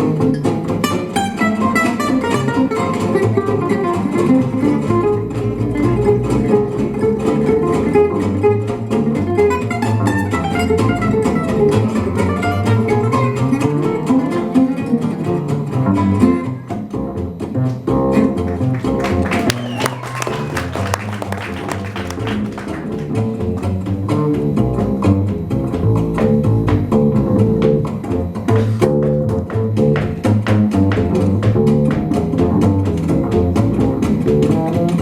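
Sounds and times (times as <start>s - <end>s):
acoustic guitars: 0.0s - 35.0s
plucked double bass: 0.0s - 35.0s
strummed rhythm guitar chords: 0.0s - 35.0s.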